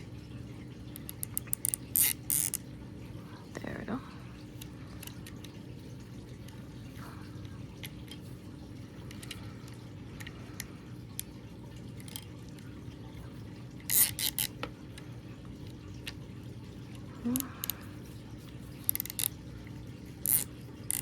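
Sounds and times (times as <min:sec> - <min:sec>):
plastic parts clicking and tapping: 0:12.0 - 0:12.3, 0:18.8 - 0:19.3, 0:20.2 - 0:21.0.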